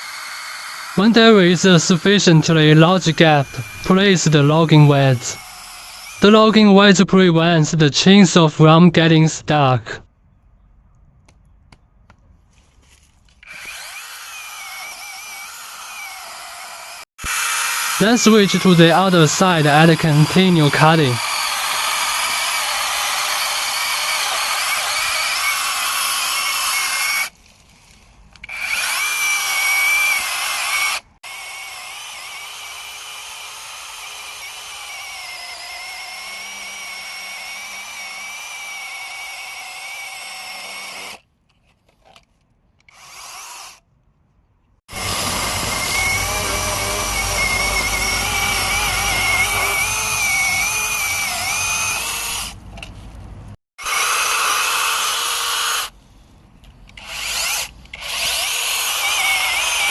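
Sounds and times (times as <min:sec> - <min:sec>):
mini chainsaw cutting tree trunk: 0:00.0 - 0:06.2, 0:13.4 - 0:27.4, 0:28.4 - 0:41.2, 0:42.9 - 0:43.8, 0:44.9 - 0:52.6, 0:53.8 - 0:56.0, 0:57.0 - 0:59.9.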